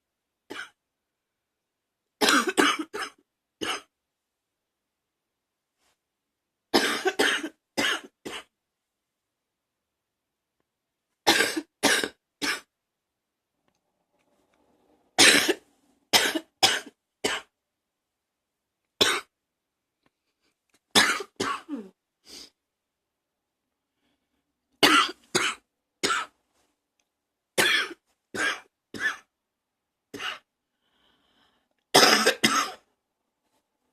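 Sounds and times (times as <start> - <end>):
person coughing: 2.2 - 3.9, 6.8 - 8.5, 11.3 - 12.7, 15.2 - 15.6, 16.2 - 17.5, 21.0 - 22.0, 24.8 - 26.3, 27.6 - 29.3, 32.0 - 32.9.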